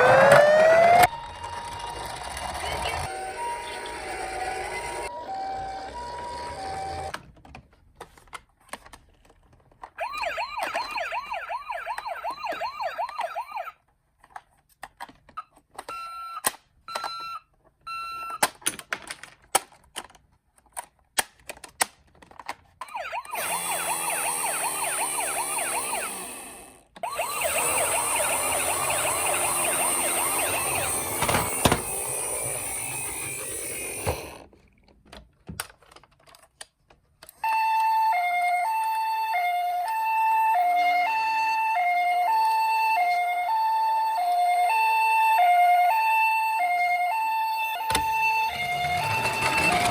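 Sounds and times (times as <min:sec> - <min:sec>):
toy warbling siren: 0:00.0 - 0:07.2, 0:09.9 - 0:13.8, 0:22.8 - 0:34.4, 0:37.4 - 0:49.9
toy cars clicking and knocking: 0:11.8 - 0:37.4, 0:47.8 - 0:49.9.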